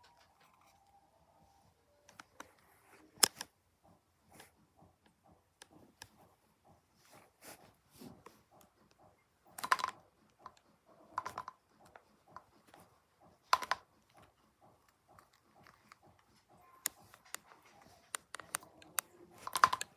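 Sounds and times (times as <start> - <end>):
taps and clicks on packaging: 11.2 - 19.9.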